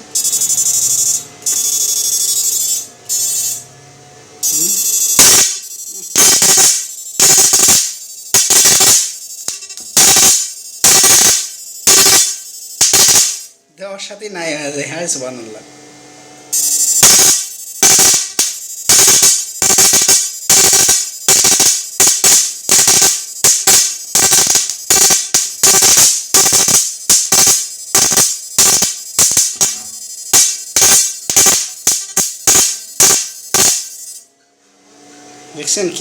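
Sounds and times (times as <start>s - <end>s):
buzzing electric arcing: 4.4s - 13.6s, 16.5s - 34.3s.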